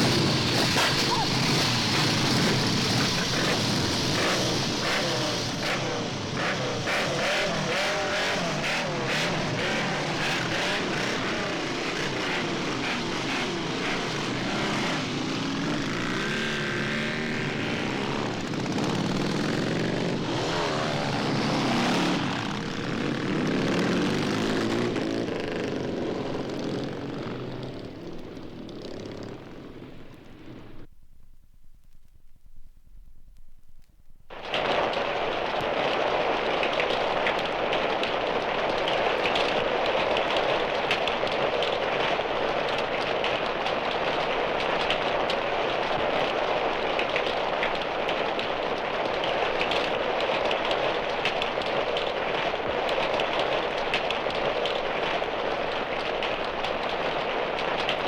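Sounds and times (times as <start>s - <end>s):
motorcycle engines revving: 0.0s - 30.9s.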